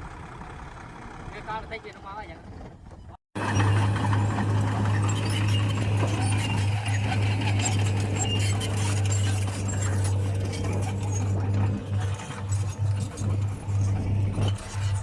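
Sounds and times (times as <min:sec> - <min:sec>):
diesel engine running under load: 0:00.0 - 0:01.9, 0:02.8 - 0:15.0.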